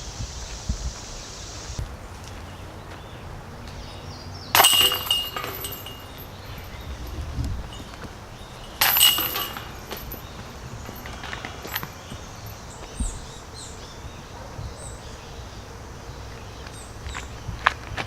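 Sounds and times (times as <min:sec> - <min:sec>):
disc golf chains crashing: 0:04.5 - 0:12.8.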